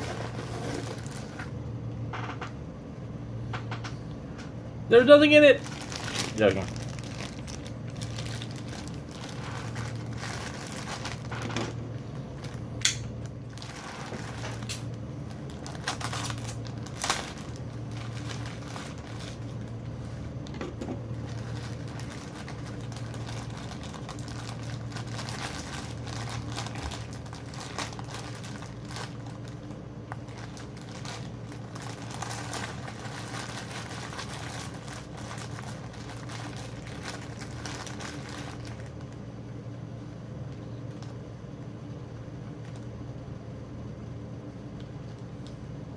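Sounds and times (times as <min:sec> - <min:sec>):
cardboard crinkling and rustling: 0:00.0 - 0:01.5, 0:05.6 - 0:12.6, 0:13.4 - 0:39.1.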